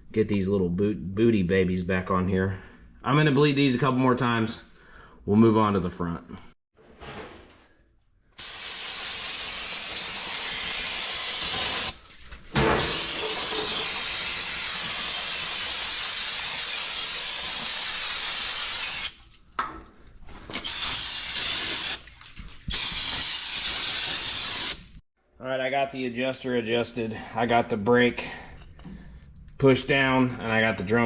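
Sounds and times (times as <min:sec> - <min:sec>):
pressurised spray hissing: 0:08.4 - 0:12.0, 0:20.7 - 0:22.0.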